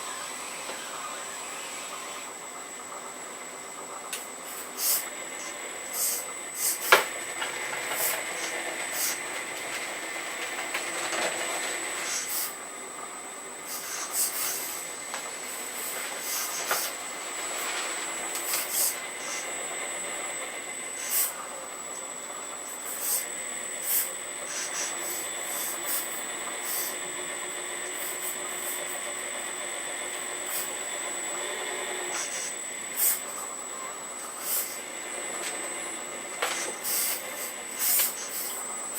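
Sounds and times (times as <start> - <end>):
high-pitched hydraulic whine: 0.0 - 38.9.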